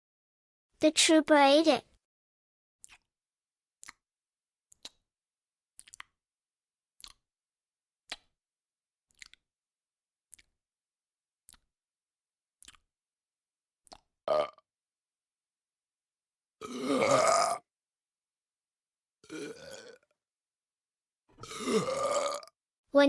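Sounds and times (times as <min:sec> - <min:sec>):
cartoon chewing chomps: 0:02.8 - 0:03.1, 0:03.8 - 0:04.0, 0:04.7 - 0:05.1, 0:05.8 - 0:06.2, 0:07.0 - 0:07.2, 0:09.1 - 0:09.5, 0:10.3 - 0:10.6, 0:11.5 - 0:11.7, 0:12.6 - 0:12.9, 0:13.8 - 0:14.5.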